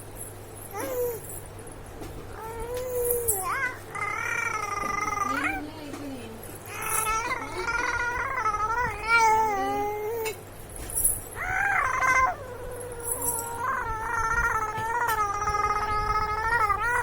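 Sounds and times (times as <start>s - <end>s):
baby squealing coos: 6.7s - 10.4s, 11.4s - 17.0s.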